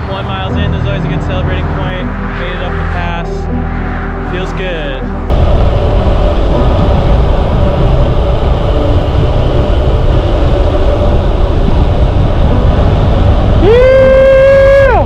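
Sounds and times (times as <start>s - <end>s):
wind buffeting microphone: 4.3s - 15.0s
person shouting: 13.6s - 15.0s.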